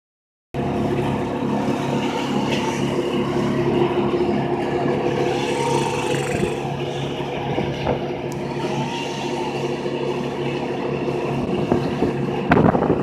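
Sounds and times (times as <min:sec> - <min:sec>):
engine running: 0:00.6 - 0:13.0
faint rising and falling tone: 0:03.9 - 0:07.0.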